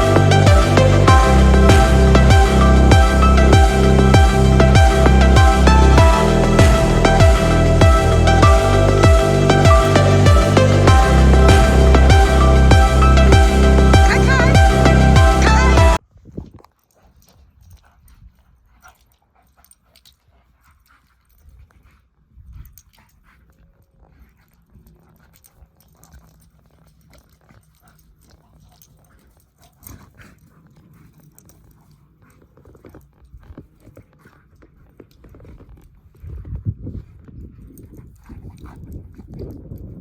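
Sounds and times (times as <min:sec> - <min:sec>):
low rumble: 0:00.0 - 0:16.0.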